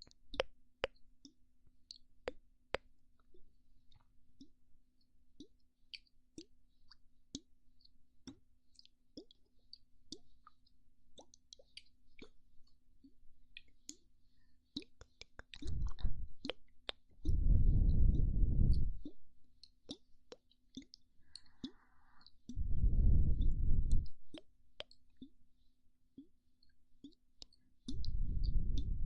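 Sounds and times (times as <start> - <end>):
wet mouth clicks and pops: 0.0 - 4.6, 5.4 - 7.5, 8.2 - 12.4, 14.7 - 25.4, 27.0 - 29.0
breath blown onto microphone: 17.3 - 19.0, 21.4 - 24.2.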